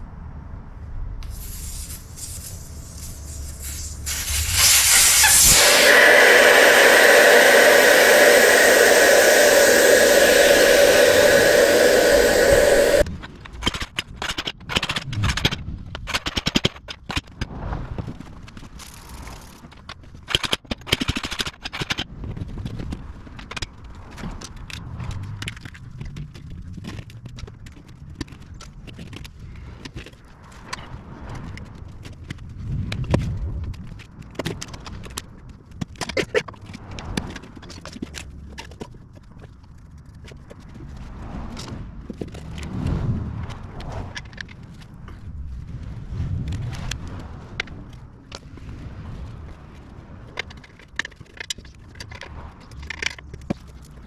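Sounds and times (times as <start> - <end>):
loud hiss with a whine: 1.2 - 13.0
irregular clicks and scrapes: 12.9 - 30.9, 49.4 - 54.0.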